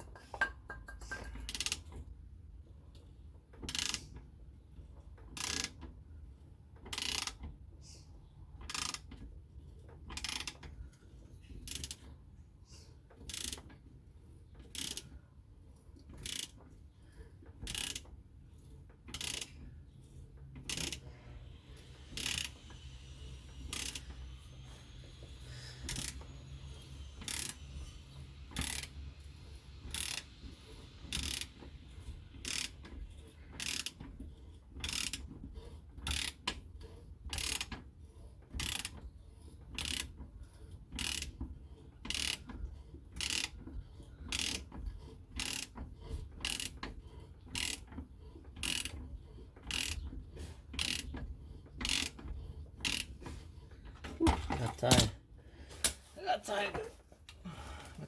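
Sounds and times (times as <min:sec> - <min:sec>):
ratchet wrench clicking: 0:01.0 - 0:02.0, 0:03.7 - 0:04.2, 0:05.3 - 0:05.9, 0:06.8 - 0:07.4, 0:08.6 - 0:09.2, 0:10.1 - 0:10.7, 0:11.6 - 0:12.1, 0:13.2 - 0:13.7, 0:14.6 - 0:15.2, 0:16.2 - 0:16.6, 0:17.6 - 0:18.1, 0:19.0 - 0:19.7, 0:20.6 - 0:33.0, 0:33.6 - 0:34.1, 0:34.7 - 0:35.4, 0:36.0 - 0:37.8, 0:38.5 - 0:39.0, 0:39.7 - 0:40.2, 0:40.9 - 0:41.4, 0:42.1 - 0:42.6, 0:43.2 - 0:43.6, 0:44.2 - 0:48.0, 0:48.6 - 0:51.2, 0:51.8 - 0:53.2.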